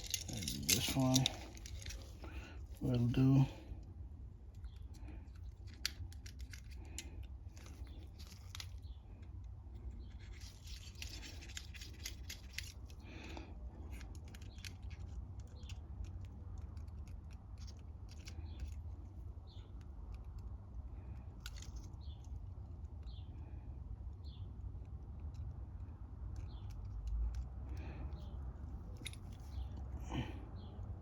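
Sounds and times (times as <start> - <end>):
small metallic clicks and scrapes: 0.0 - 3.4, 4.5 - 23.2, 24.2 - 30.0
low steady hum: 0.0 - 31.0.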